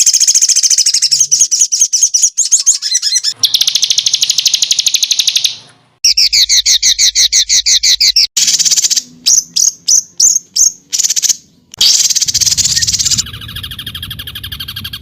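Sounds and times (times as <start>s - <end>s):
single bird chirps: 0.0s - 15.0s
songbird high trill: 0.0s - 15.0s.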